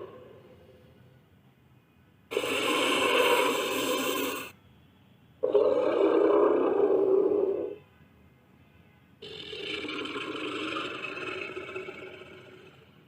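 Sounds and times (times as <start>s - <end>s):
dinosaur roars: 2.3s - 4.5s, 5.4s - 7.8s, 9.2s - 12.9s.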